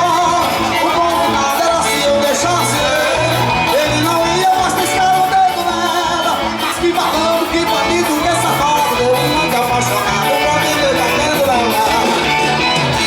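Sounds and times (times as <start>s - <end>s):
band playing: 0.0s - 13.0s
bass line: 0.0s - 13.0s
person singing: 0.0s - 13.0s.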